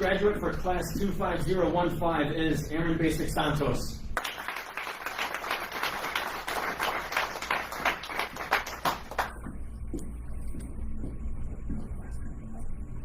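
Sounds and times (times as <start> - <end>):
audience applauding: 4.2 - 9.4.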